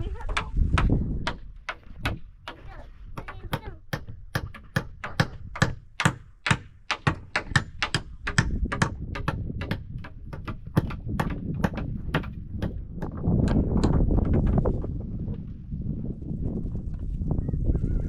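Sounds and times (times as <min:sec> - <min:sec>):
sharp knocks: 0:00.2 - 0:14.6.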